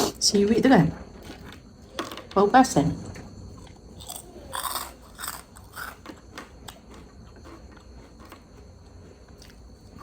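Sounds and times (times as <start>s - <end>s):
chewing with crisp crunches: 3.6s - 10.0s.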